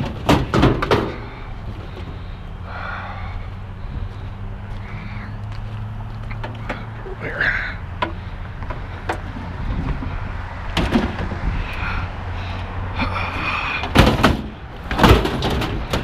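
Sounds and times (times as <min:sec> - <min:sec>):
heavy equipment clunking: 0:00.0 - 0:05.0, 0:05.6 - 0:16.0
steady low hum: 0:00.0 - 0:15.0
loud bangs: 0:13.8 - 0:16.0.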